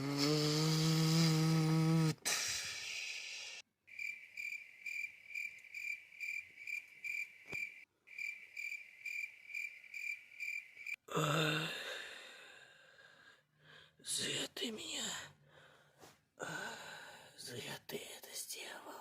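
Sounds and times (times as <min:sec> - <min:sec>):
cricket chirping: 0:03.9 - 0:11.0.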